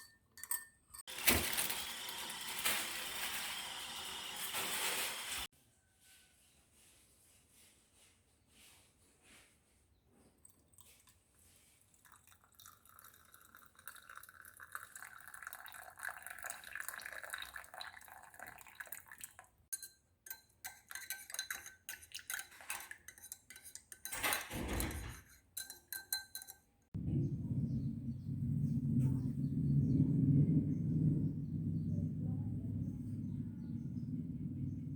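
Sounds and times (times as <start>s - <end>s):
glassware and utensils clinking: 0.0s - 1.8s, 19.7s - 26.8s
utensils clattering: 0.0s - 5.5s, 19.8s - 26.6s
low steady hum: 27.0s - 34.9s.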